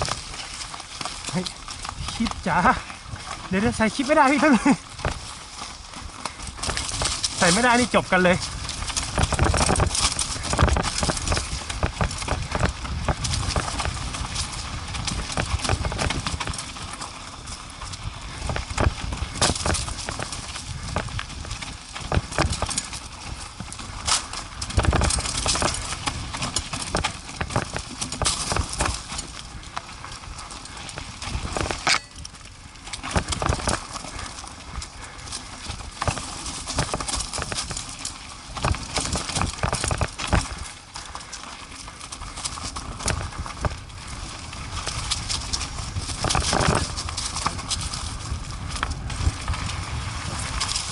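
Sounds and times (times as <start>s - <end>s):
atv engine noise: 0.0s - 50.9s
knocks and rattles: 8.9s - 13.9s.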